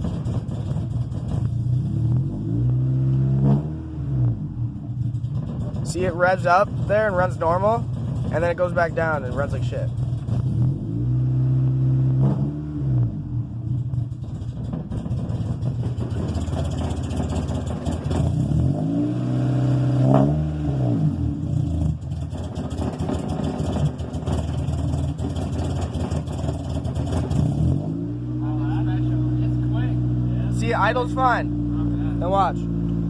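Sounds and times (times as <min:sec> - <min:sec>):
car engine idling unevenly: 0:00.0 - 0:02.2, 0:04.3 - 0:10.7, 0:13.1 - 0:18.6, 0:21.1 - 0:33.0.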